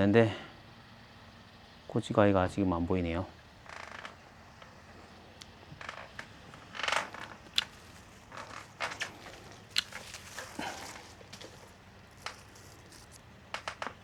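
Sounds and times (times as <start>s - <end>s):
stems and leaves rustling: 3.6s - 14.0s
pruning shears snipping: 5.4s - 14.0s.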